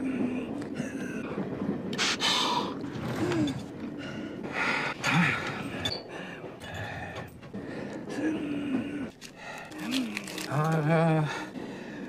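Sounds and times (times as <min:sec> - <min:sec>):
man gasping and wheezing: 0:04.0 - 0:10.2.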